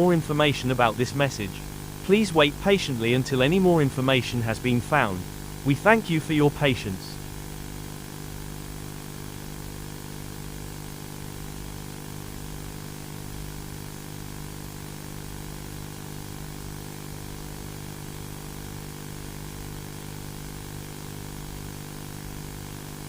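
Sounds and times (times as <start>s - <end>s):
constant hiss: 0.0s - 7.3s.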